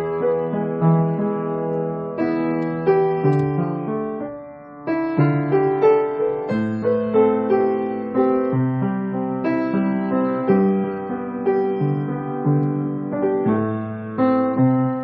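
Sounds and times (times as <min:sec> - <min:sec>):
gentle piano melody: 0:00.0 - 0:15.0.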